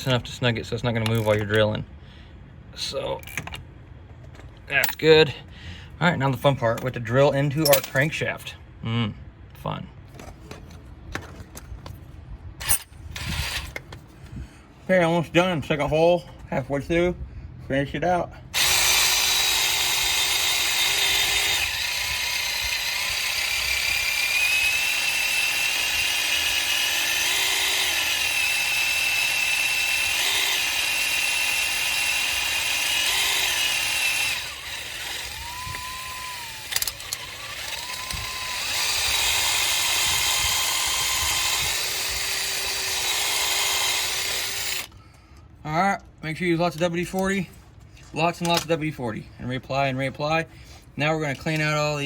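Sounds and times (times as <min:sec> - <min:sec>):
electric drill whining: 0:12.6 - 0:13.8, 0:18.6 - 0:45.0.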